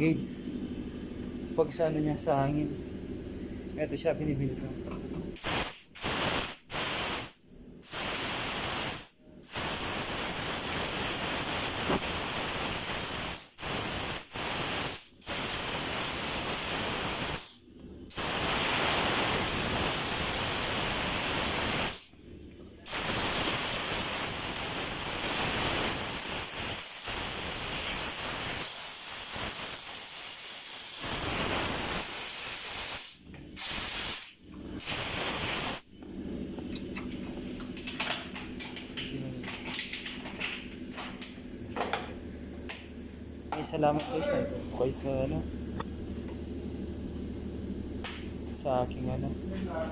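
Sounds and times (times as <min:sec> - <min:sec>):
compressed air hissing: 0:05.3 - 0:22.2, 0:22.8 - 0:35.9.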